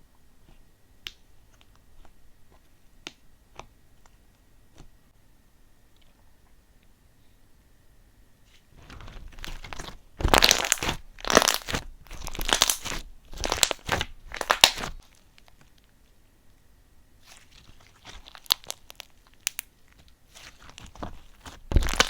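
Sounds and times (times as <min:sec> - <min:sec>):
crinkling and crunching by hand: 0:08.5 - 0:16.2, 0:17.2 - 0:22.0.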